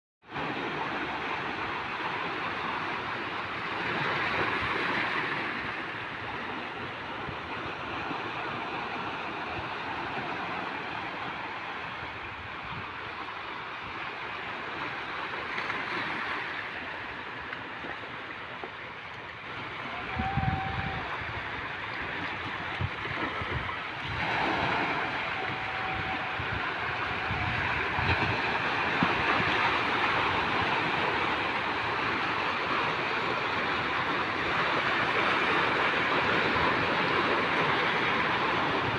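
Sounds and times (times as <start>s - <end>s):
sea surf washing in: 0.3s - 38.9s
wind buffeting microphone: 19.4s - 38.9s.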